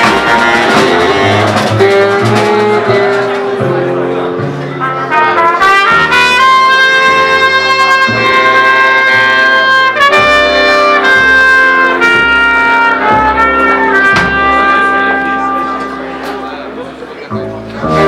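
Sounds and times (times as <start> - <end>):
drum hits: 0.0 - 4.8, 12.1 - 16.8
bass: 0.0 - 18.0
loud lead melody: 0.0 - 18.0.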